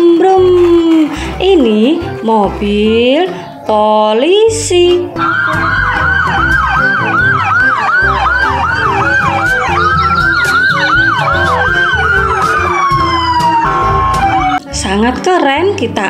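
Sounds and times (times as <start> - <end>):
police siren yelping and wailing: 5.1 - 14.8.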